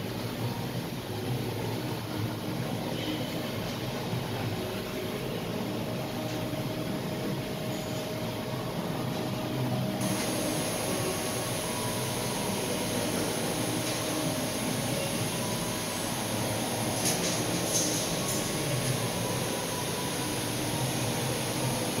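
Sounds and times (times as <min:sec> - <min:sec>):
welding arc: 0:10.0 - 0:22.0.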